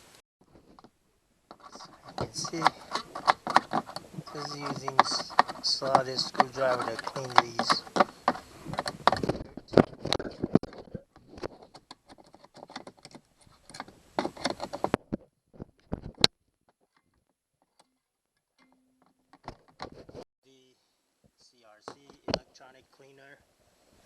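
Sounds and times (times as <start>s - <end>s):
screwdriver scraping metal contacts: 1.5s - 9.4s, 11.4s - 15.0s.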